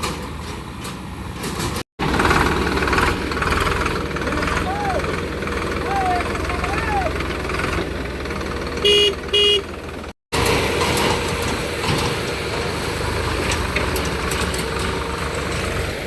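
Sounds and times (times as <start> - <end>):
diesel engines running: 0.0 - 16.0
loud horn beeps: 8.8 - 9.7.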